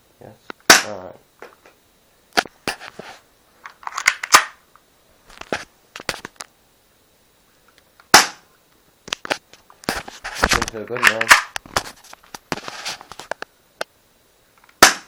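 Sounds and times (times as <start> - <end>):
airsoft pistol shot: 0.7 - 1.0, 8.1 - 8.4, 14.8 - 15.0
plastic clicks and rattles: 10.6 - 11.8.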